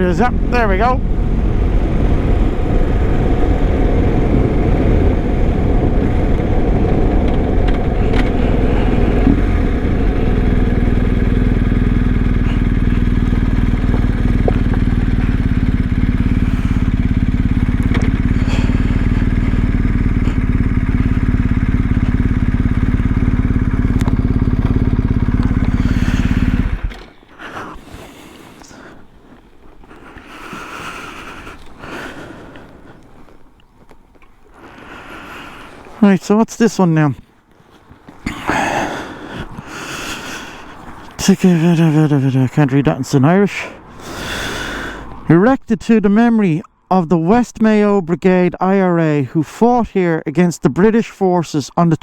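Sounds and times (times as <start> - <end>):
motorcycle engine idling: 0.0 - 35.9, 43.7 - 45.3.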